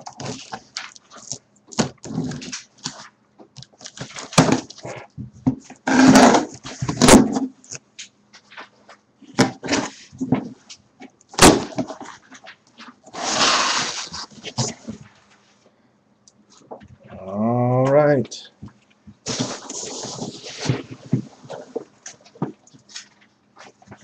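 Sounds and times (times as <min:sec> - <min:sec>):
cardboard tearing: 0:00.0 - 0:03.0, 0:05.9 - 0:07.4, 0:13.1 - 0:14.9, 0:19.2 - 0:21.9
packing tape ripping: 0:00.0 - 0:03.0, 0:13.1 - 0:14.8
cardboard flaps scraping: 0:09.4 - 0:10.6, 0:11.4 - 0:15.2, 0:19.2 - 0:24.0.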